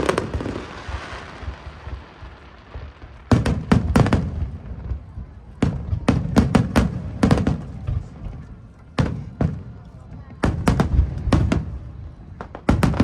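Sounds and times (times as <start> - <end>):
fireworks bursting with sharp bangs: 0.0 - 13.0.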